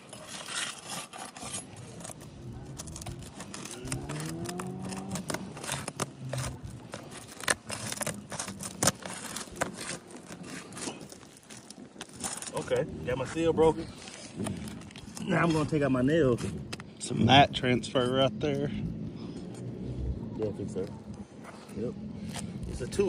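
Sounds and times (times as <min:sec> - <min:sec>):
shingle seal being pried apart: 0:00.0 - 0:12.5
low engine-like sound: 0:17.6 - 0:23.0.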